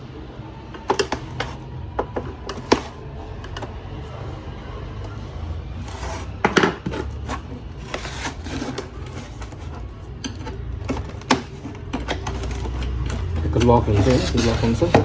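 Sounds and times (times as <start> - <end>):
plastic casing clicks and scraping: 0.7 - 3.8, 5.8 - 15.0.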